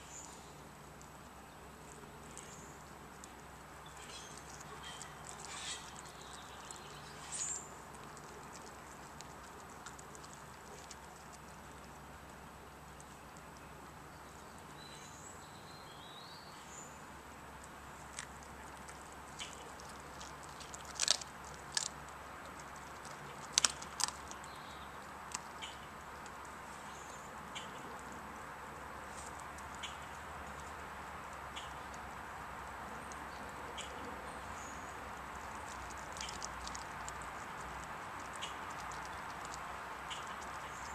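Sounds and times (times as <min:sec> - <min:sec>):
steady low hiss: 0:00.0 - 0:40.9
dog chewing raw chicken: 0:01.8 - 0:12.0, 0:18.0 - 0:26.5, 0:35.1 - 0:40.9
teeth clicking: 0:07.8 - 0:13.7, 0:18.0 - 0:26.6, 0:35.1 - 0:40.9.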